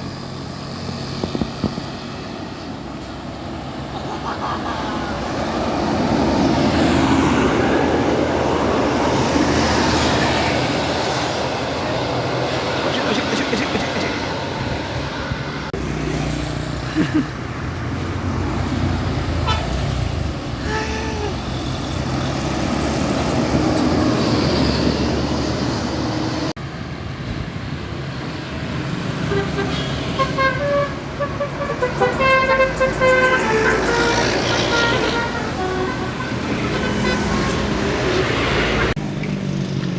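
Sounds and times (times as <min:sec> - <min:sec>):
bus engines passing: 0:00.0 - 0:39.9
horn toots: 0:29.2 - 0:38.2.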